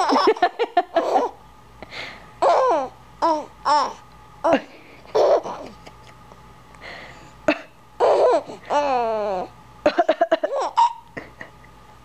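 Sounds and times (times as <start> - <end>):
baby laughing and squealing: 0.0 - 0.4, 2.4 - 4.0, 5.2 - 5.7, 8.0 - 9.5, 10.4 - 11.0
woman coughing: 7.5 - 7.8, 9.9 - 11.3.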